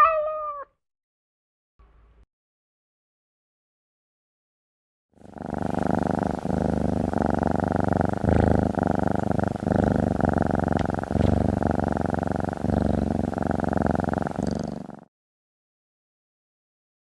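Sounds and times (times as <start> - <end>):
cat purring: 5.2 - 15.1.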